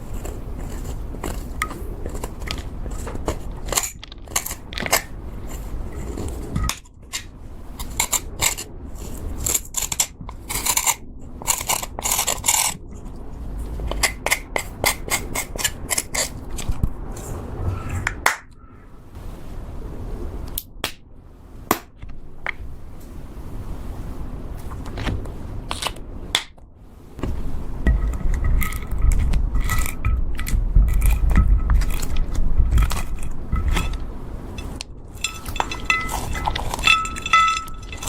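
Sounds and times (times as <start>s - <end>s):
slime scraping: 0.0s - 12.8s, 28.0s - 38.0s.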